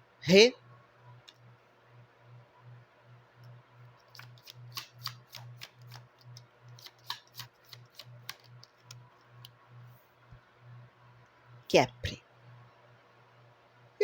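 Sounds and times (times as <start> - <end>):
cards being shuffled: 4.1 - 9.0
sharp card snaps and taps: 6.7 - 9.0.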